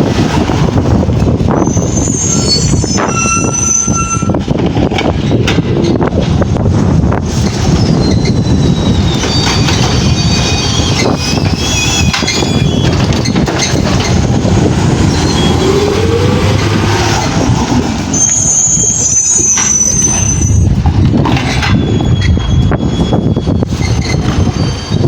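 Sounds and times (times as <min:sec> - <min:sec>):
garbage truck engine rumble: 0:00.0 - 0:25.0
wind buffeting microphone: 0:00.0 - 0:25.0
high metal squeals: 0:01.6 - 0:04.4, 0:07.6 - 0:14.4, 0:15.0 - 0:16.2, 0:18.1 - 0:20.8, 0:21.5 - 0:25.0
rising whine: 0:14.2 - 0:20.8.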